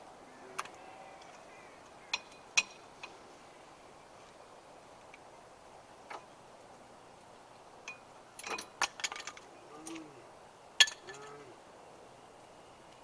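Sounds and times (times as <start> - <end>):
metal tools clinking: 10.8 - 11.4.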